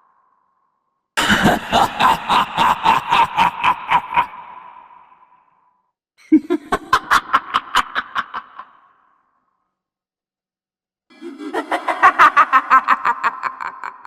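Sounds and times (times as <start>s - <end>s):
girl's evil laugh with echo: 1.2s - 5.3s, 6.2s - 9.2s, 11.1s - 14.0s.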